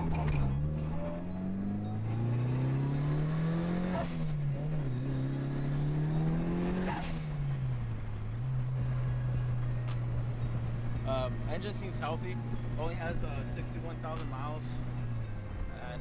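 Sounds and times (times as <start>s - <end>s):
car engine accelerating hard: 0.0s - 16.0s.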